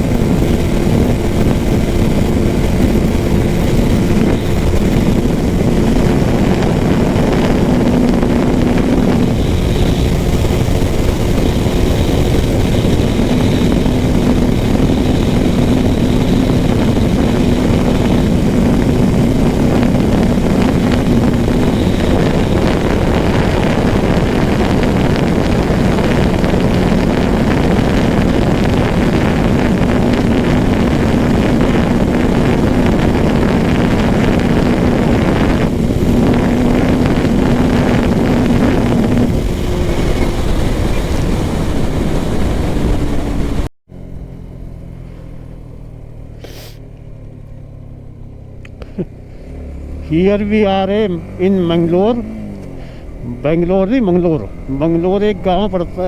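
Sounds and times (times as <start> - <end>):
wind noise on microphone: 0.0 - 45.8
motorcycle engine running: 0.0 - 56.0.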